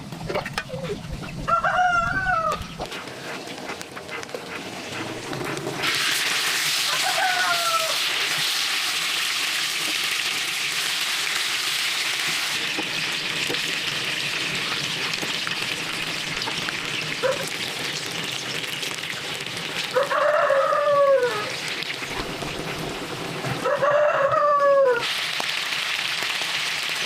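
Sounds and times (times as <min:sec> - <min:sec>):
chickens calling: 0:00.2 - 0:05.7, 0:06.8 - 0:08.1, 0:19.9 - 0:25.1.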